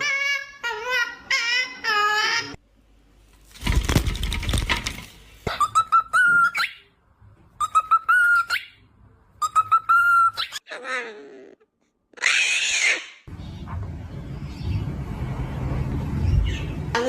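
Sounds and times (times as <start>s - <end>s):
parrot harsh call: 12.2s - 13.3s.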